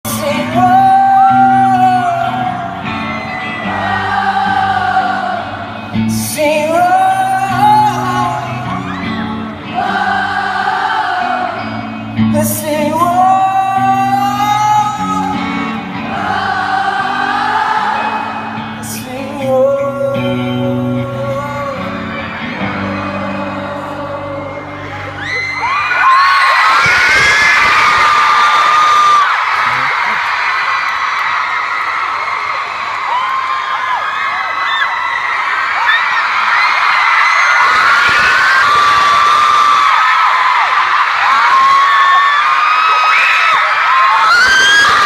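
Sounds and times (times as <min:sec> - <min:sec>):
sustained sung vocals: 0:00.0 - 0:25.2.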